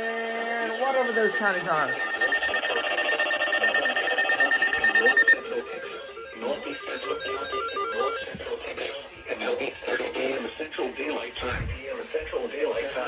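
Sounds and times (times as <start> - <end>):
short electronic beeps: 0.0 - 8.4
rapidly pulsing electronic alert chord: 0.0 - 8.6.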